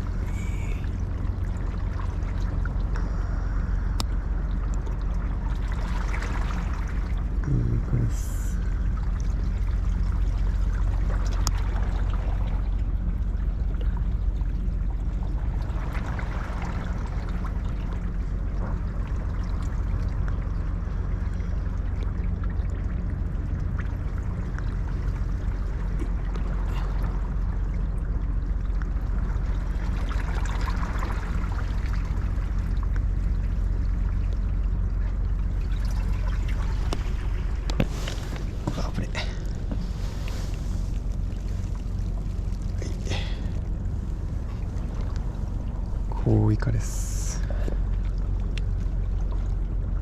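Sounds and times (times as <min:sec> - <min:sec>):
seawater sloshing and trickling: 0:00.0 - 0:50.0
steady low rumble: 0:00.0 - 0:50.0.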